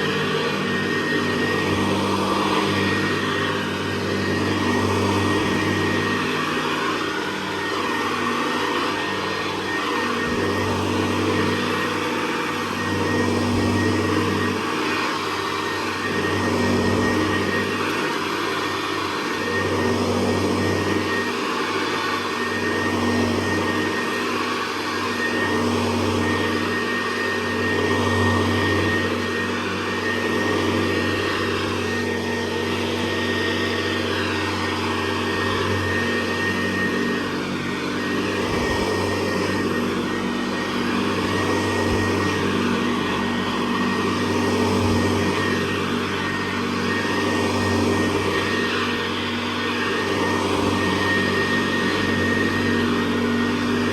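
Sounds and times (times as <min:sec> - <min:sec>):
upright vacuum cleaner running: 0:00.0 - 0:53.9.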